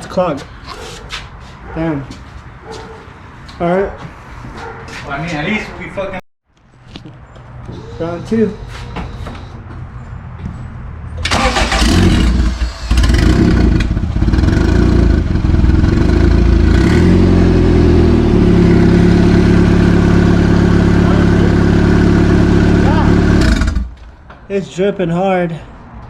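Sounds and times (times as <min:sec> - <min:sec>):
engine cranking: 0:11.2 - 0:14.0, 0:23.3 - 0:24.0
engine running and idling: 0:11.2 - 0:23.9.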